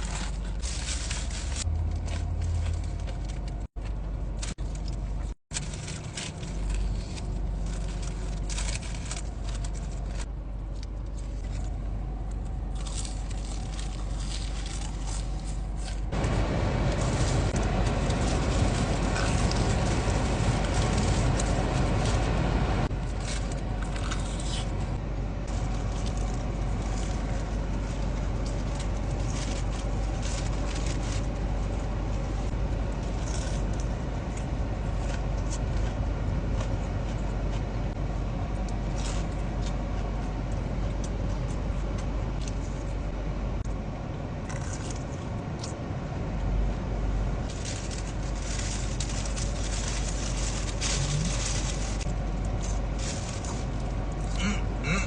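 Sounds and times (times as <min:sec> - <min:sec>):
food packaging crackling: 0:00.0 - 0:37.6, 0:47.4 - 0:55.0
vehicle cabin rumble: 0:00.0 - 0:55.0.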